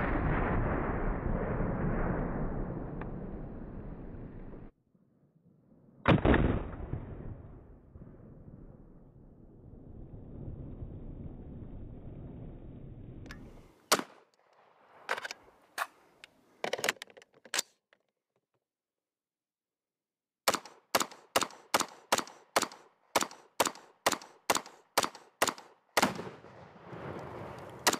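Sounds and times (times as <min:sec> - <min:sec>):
rifle gunshots: 0:20.5 - 0:26.6.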